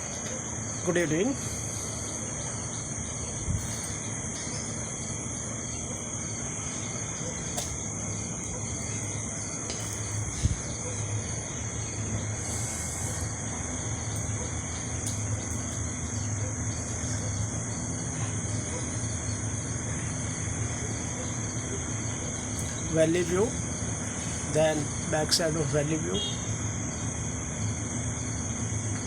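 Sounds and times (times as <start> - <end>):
insects trilling: 0.0 - 29.0.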